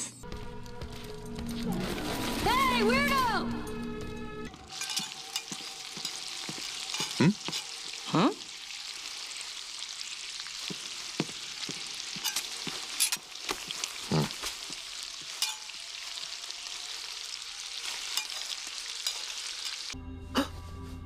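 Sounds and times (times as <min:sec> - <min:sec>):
soft ambient music: 0:00.2 - 0:07.9, 0:12.0 - 0:21.0.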